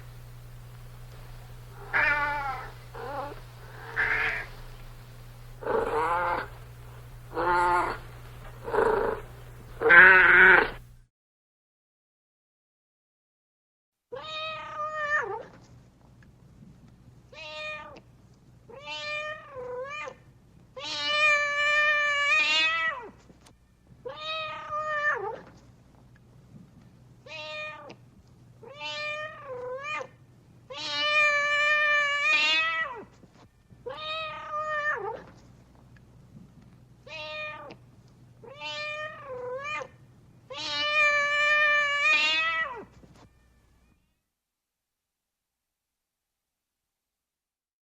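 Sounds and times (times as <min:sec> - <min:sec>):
cat meowing: 0:01.8 - 0:04.5, 0:05.6 - 0:06.5, 0:07.3 - 0:08.0, 0:08.6 - 0:10.8, 0:14.1 - 0:15.5, 0:17.3 - 0:18.0, 0:18.7 - 0:20.2, 0:20.8 - 0:23.2, 0:24.0 - 0:25.5, 0:27.3 - 0:28.0, 0:28.6 - 0:33.1, 0:33.8 - 0:35.3, 0:37.1 - 0:37.8, 0:38.4 - 0:44.2.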